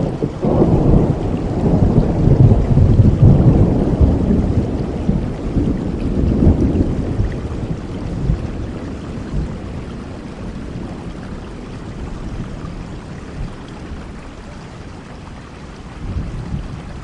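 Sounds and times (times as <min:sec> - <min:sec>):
distant thunder rumble: 0:00.0 - 0:14.3, 0:16.0 - 0:17.0
steady rainfall: 0:00.0 - 0:17.0.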